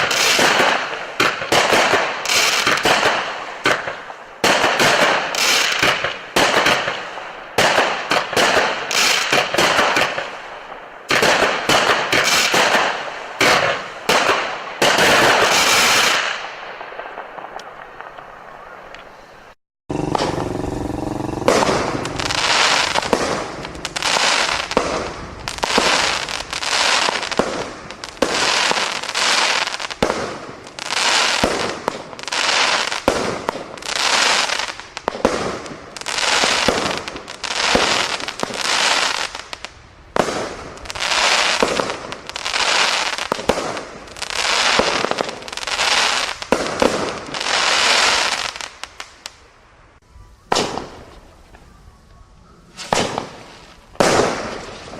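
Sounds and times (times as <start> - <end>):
fireworks shots bursting: 0.0 - 49.5, 50.5 - 51.6, 52.8 - 54.9
firework whine: 17.1 - 39.3.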